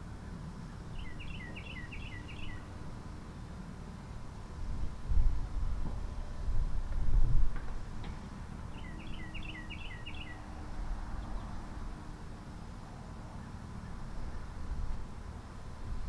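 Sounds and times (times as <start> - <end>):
songbird singing: 1.0 - 2.7, 8.7 - 10.5.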